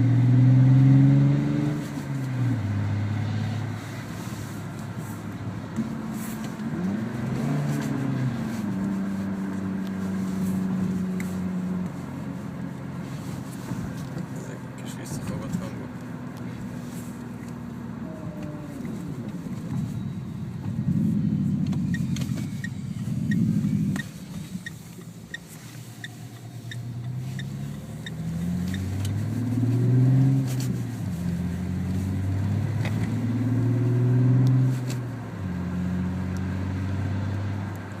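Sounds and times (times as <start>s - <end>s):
synthetic car engine sound: 17.8s - 34.0s
regular ticking: 21.6s - 29.2s.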